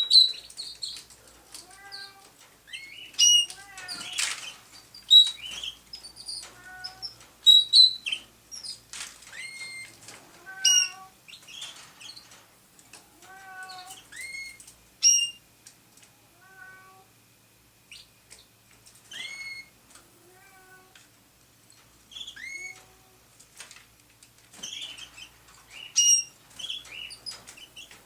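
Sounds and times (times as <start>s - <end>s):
canary chirps: 0.0s - 1.2s, 1.8s - 10.0s, 10.6s - 12.4s, 13.6s - 15.4s, 17.9s - 19.8s, 22.1s - 23.0s, 24.5s - 28.0s
cat meowing: 1.5s - 2.3s, 3.4s - 4.2s, 6.5s - 7.2s, 10.4s - 11.2s, 13.2s - 14.0s, 16.4s - 17.1s, 19.3s - 21.0s.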